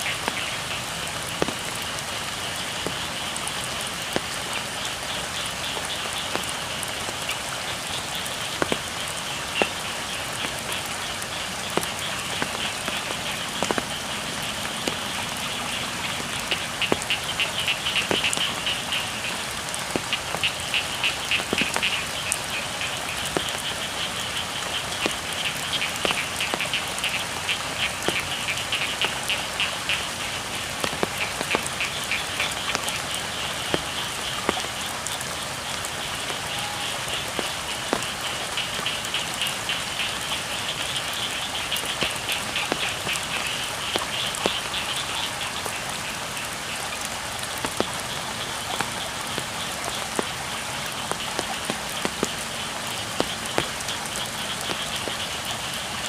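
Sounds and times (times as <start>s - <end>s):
frogs calling in pulsing trills: 0.0s - 56.0s
rain falling: 0.0s - 56.0s
sharp raindrop ticks: 0.0s - 56.0s.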